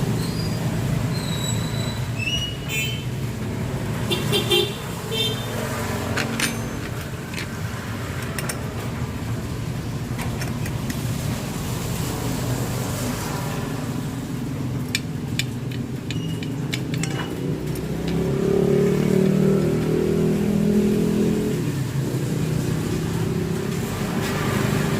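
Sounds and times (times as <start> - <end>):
sharp clicks: 14.8 - 18.2.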